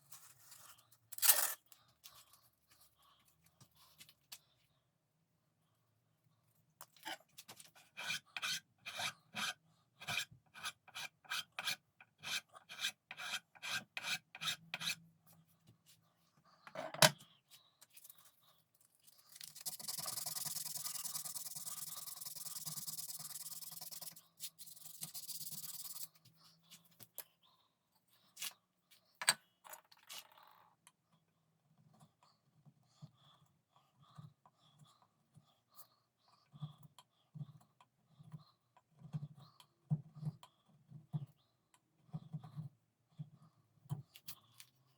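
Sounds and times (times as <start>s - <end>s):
hand filing wood: 7.8s - 15.0s, 19.6s - 26.1s.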